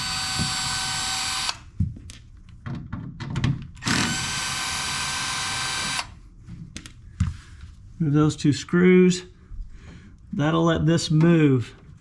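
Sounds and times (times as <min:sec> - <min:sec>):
power drill running: 0:00.0 - 0:01.6, 0:03.8 - 0:06.2.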